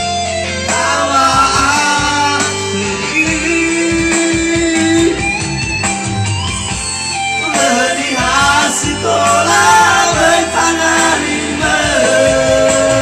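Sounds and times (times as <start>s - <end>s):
guitar accompaniment: 0.0s - 13.0s
person singing: 0.7s - 5.4s, 7.4s - 13.0s.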